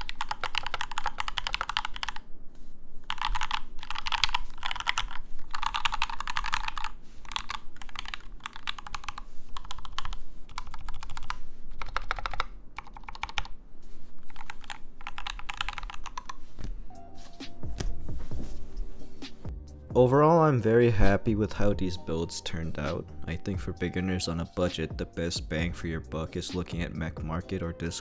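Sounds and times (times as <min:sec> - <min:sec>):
fast typing on mechanical keyboard: 0:00.0 - 0:02.2, 0:03.0 - 0:13.5, 0:14.2 - 0:16.4.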